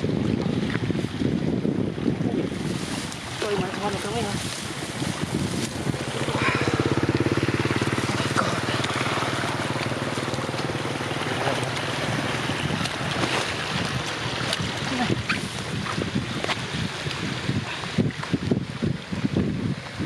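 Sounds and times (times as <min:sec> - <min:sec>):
wind noise on microphone: 0:00.0 - 0:20.0
small engine running: 0:05.8 - 0:12.4.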